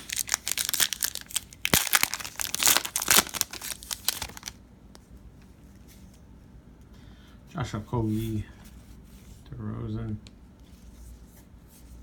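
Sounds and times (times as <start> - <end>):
foil wrapper crinkling and tearing: 0.0 - 4.6.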